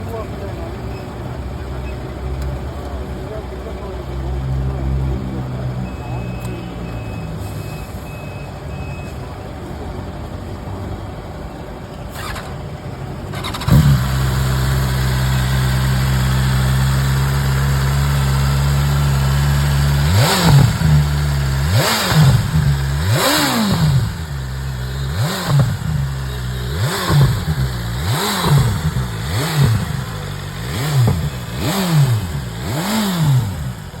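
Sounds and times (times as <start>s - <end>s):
motorcycle engine idling: 11.5s - 34.0s
motorcycle engine starting: 12.0s - 34.0s
motorcycle engine revving: 12.1s - 34.0s.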